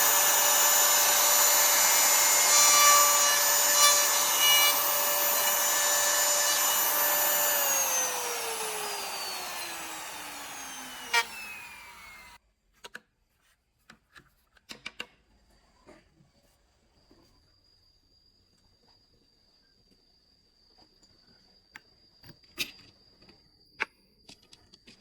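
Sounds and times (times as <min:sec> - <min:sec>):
circular saw motor winding down: 0:00.0 - 0:12.4.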